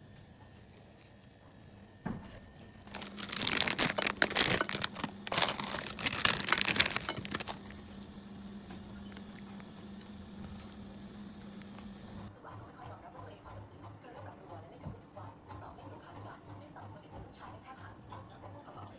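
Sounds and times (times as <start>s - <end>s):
faint steady hum: 0.0s - 12.3s
dense crinkling and crackling: 0.7s - 8.1s.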